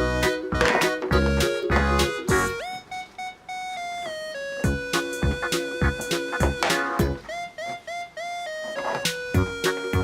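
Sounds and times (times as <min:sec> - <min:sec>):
synthesizer melody: 0:00.0 - 0:10.0
kick drum beat: 0:04.7 - 0:07.2.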